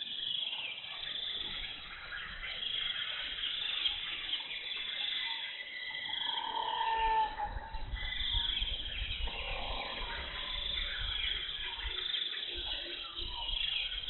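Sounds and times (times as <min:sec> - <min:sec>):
insects trilling: 0:00.0 - 0:14.0
animal call: 0:05.3 - 0:08.3, 0:09.2 - 0:11.2.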